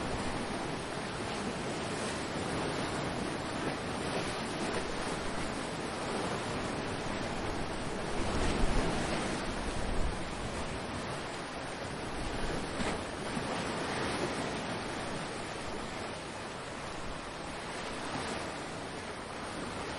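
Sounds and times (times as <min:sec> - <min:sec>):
ocean surf washing: 0:00.0 - 0:19.9.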